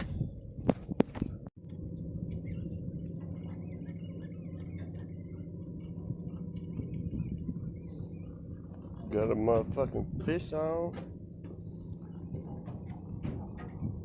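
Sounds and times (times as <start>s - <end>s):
faint squeaks and clicks: 1.1s - 9.9s
boat engine idling: 1.2s - 14.0s.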